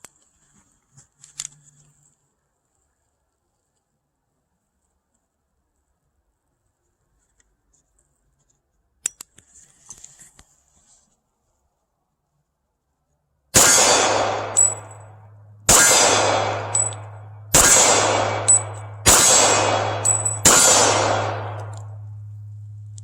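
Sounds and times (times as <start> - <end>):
high metallic ping: 13.6 - 23.0
pistol shots echoing: 13.6 - 23.0
steady low hum: 13.6 - 23.0.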